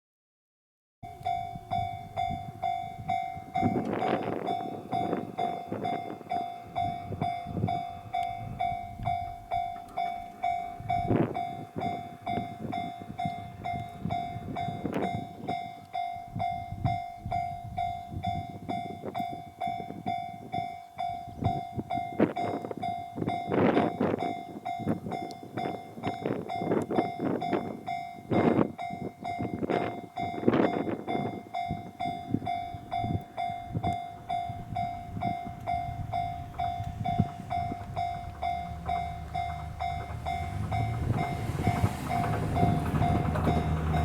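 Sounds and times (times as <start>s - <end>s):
level crossing warning bell ringing: 1.0s - 44.0s
railcar rumbling over crossing: 1.0s - 44.0s
irregular wheel knocks: 34.4s - 44.0s.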